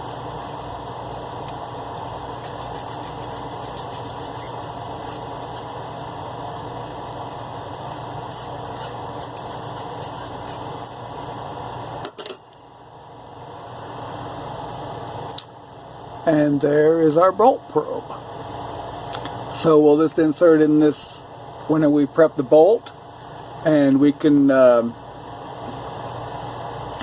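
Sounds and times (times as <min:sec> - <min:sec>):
file scraping spinning metal: 0:02.4 - 0:06.2, 0:07.8 - 0:10.9.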